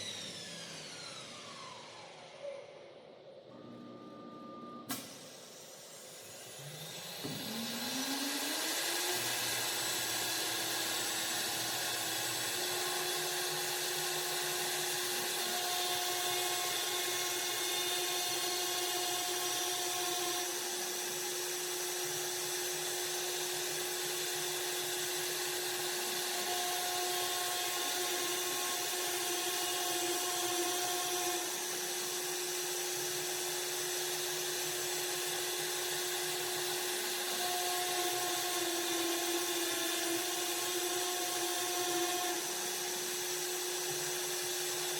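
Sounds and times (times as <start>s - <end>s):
machine spindle cutting wood: 6.3s - 20.8s, 24.2s - 32.5s, 33.7s - 44.9s.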